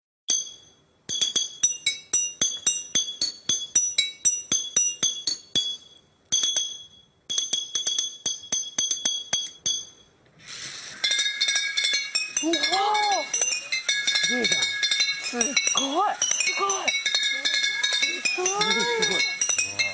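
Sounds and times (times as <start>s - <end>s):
toy train metal chimes melody: 10.9s - 19.9s.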